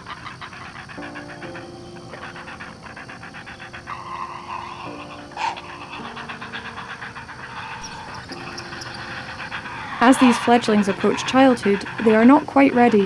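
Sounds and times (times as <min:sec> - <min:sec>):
heron chicks rattling calls: 0:00.0 - 0:13.0
heron squawk: 0:00.0 - 0:13.0.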